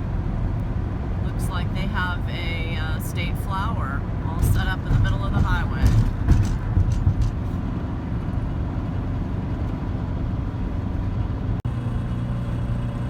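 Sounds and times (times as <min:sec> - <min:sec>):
road noise: 0:00.0 - 0:13.0
van engine droning: 0:00.0 - 0:13.0.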